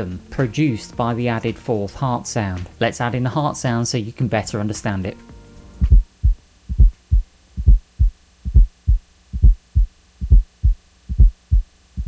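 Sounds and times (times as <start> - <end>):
heartbeat gallop rhythm: 5.8 - 12.0.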